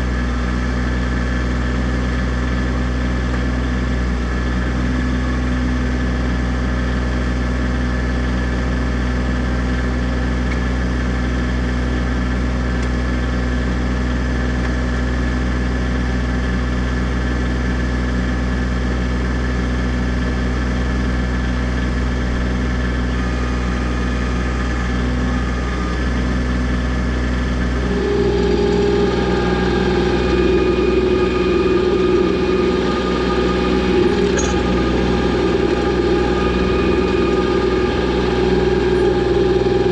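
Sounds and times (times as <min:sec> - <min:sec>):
tractor diesel engine running: 0:00.0 - 0:39.9
hydraulic whine: 0:19.2 - 0:39.9.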